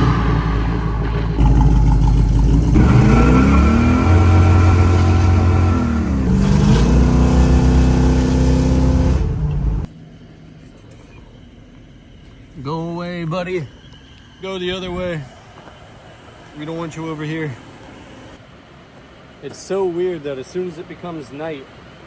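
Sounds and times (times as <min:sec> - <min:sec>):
vehicle engine revving: 0:00.0 - 0:09.9.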